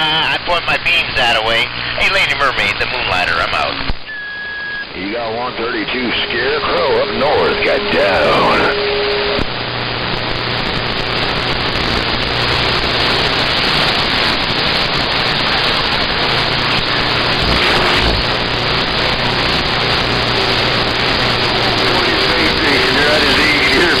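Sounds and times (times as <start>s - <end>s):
radio static hiss: 0.0s - 24.0s
faint low hum: 1.8s - 13.1s.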